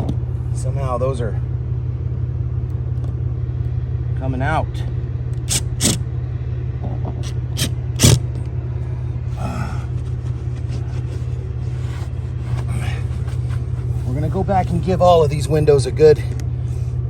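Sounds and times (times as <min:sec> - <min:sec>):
low mechanical rumble: 0:00.0 - 0:17.0.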